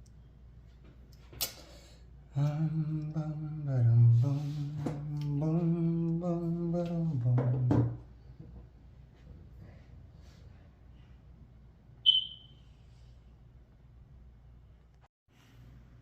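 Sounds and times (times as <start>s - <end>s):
person humming: 2.3s - 7.7s.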